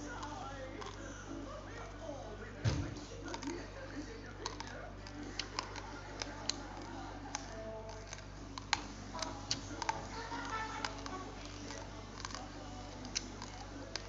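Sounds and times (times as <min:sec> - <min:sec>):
person chewing food: 0:00.0 - 0:02.1, 0:02.8 - 0:14.0.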